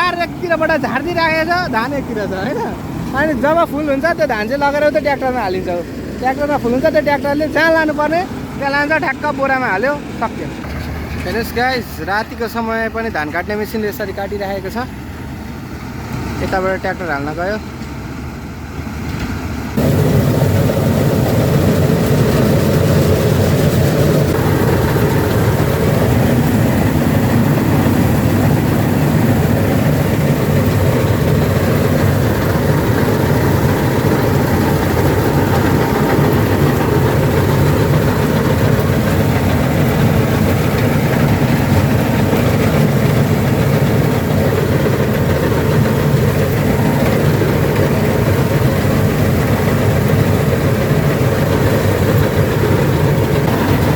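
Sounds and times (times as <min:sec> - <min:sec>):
combine harvester running: 0:00.0 - 0:53.9.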